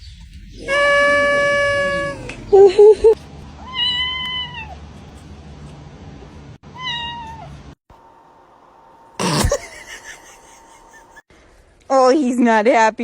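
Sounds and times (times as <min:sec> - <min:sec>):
cat meowing: 0:00.6 - 0:02.4, 0:03.6 - 0:04.8, 0:06.7 - 0:07.5.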